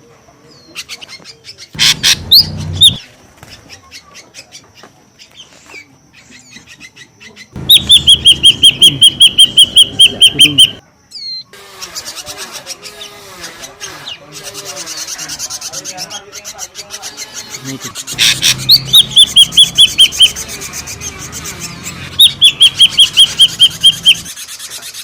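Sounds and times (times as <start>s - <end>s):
bird chirps and whistles: 1.8s - 3.0s, 7.6s - 11.4s, 18.1s - 24.4s.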